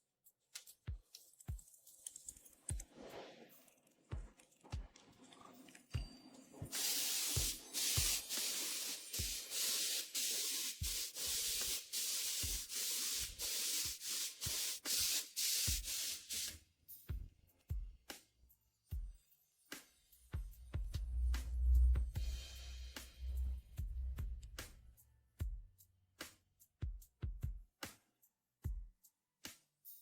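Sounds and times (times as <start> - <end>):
background music with beat: 0.5 - 2.9, 6.7 - 30.0
rubbing and handling sounds: 6.7 - 16.6
spray hissing: 6.7 - 16.6.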